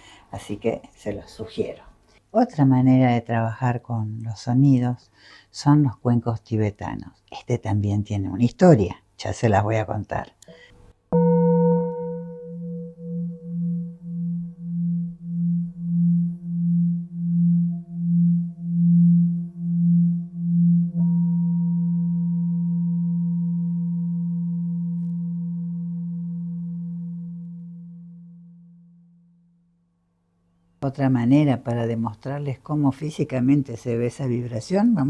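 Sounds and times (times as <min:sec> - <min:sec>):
singing bowl ringing: 0:11.1 - 0:29.6.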